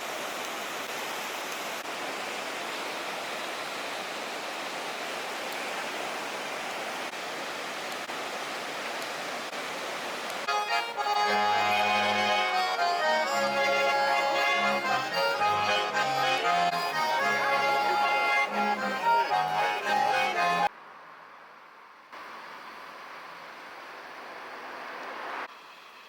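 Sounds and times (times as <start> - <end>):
accordion folk music: 10.5 - 20.7.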